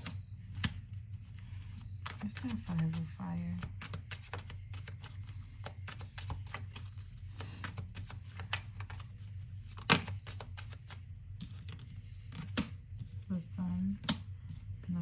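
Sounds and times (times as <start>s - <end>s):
steady low hum: 0.0s - 15.0s
cards shuffled clicking: 1.6s - 9.1s, 9.7s - 12.8s.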